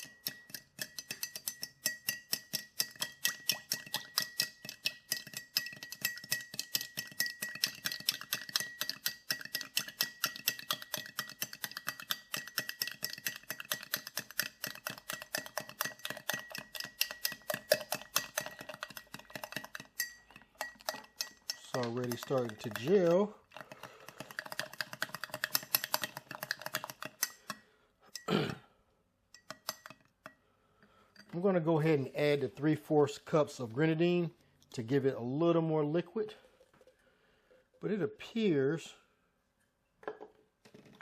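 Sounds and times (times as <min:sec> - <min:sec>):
spoon clicking against container: 0:00.0 - 0:27.6, 0:29.3 - 0:30.4.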